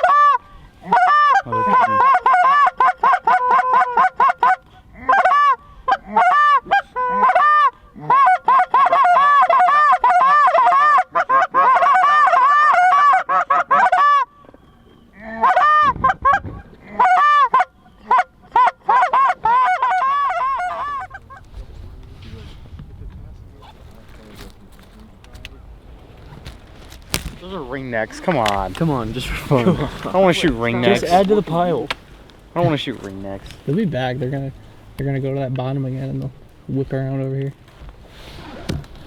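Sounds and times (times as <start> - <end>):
goose honking and clucking: 0.0 - 14.3, 15.2 - 21.4.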